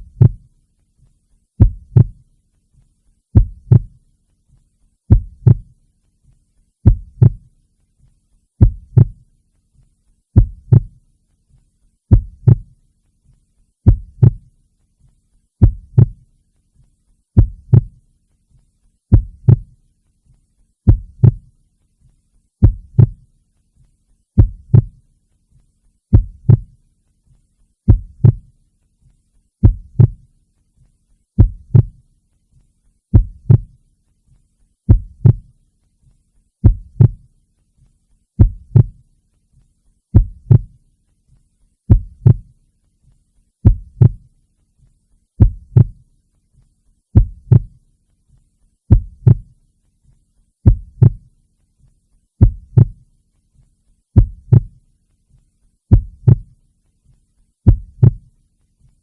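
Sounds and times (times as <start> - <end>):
heartbeat thumps: 0.0 - 0.5, 1.6 - 2.3, 3.3 - 4.0, 5.1 - 5.8, 6.8 - 7.5, 8.6 - 9.3, 10.4 - 11.0, 12.1 - 12.8, 13.8 - 14.5, 15.6 - 16.3, 17.4 - 18.0, 19.1 - 19.8, 20.9 - 21.6, 22.6 - 23.3, 24.4 - 25.0, 26.1 - 26.8, 27.9 - 28.5, 29.6 - 30.3, 31.4 - 32.0, 33.1 - 33.8, 34.9 - 35.5, 36.6 - 37.3, 38.4 - 39.0, 40.1 - 40.8, 41.9 - 42.6, 43.6 - 44.3, 45.4 - 46.0, 47.2 - 47.8, 48.9 - 49.6, 50.6 - 51.3, 52.4 - 53.0, 54.2 - 54.8, 55.9 - 56.5, 57.6 - 58.3.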